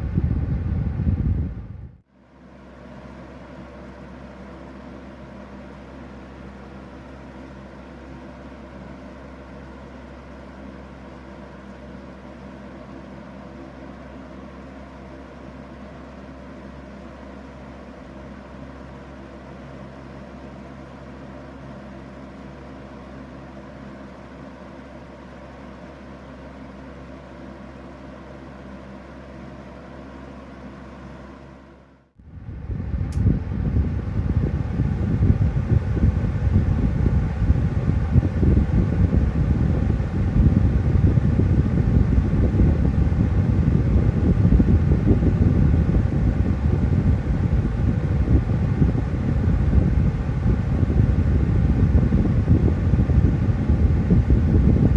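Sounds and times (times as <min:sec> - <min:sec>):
gusty wind on microphone: 0:00.0 - 0:02.0, 0:32.2 - 0:54.9
box fan running: 0:00.0 - 0:54.9.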